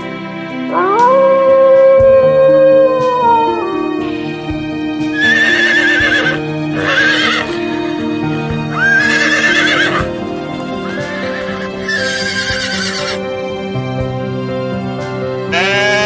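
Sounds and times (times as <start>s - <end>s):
background music with held notes: 0.0s - 16.0s
horse whinnying: 5.2s - 13.2s, 15.5s - 16.0s.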